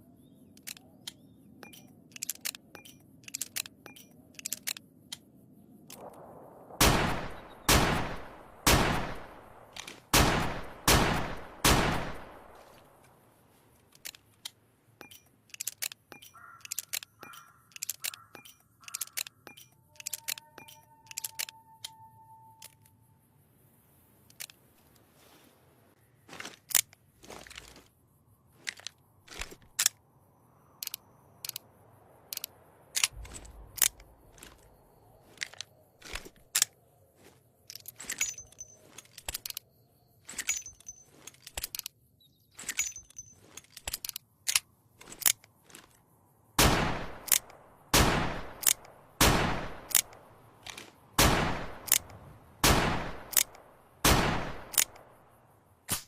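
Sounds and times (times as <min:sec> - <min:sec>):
loud gunshots with ringing tail: 0:06.7 - 0:12.5, 0:46.6 - 0:47.3, 0:47.9 - 0:48.6, 0:49.2 - 0:49.9, 0:51.2 - 0:51.9, 0:52.6 - 0:53.3, 0:54.0 - 0:54.7.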